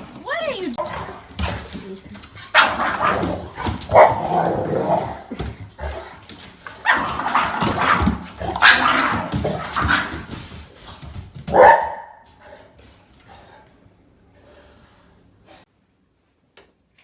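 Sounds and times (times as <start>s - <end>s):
dog barking: 2.5s - 3.3s, 3.9s - 4.4s, 11.5s - 12.2s.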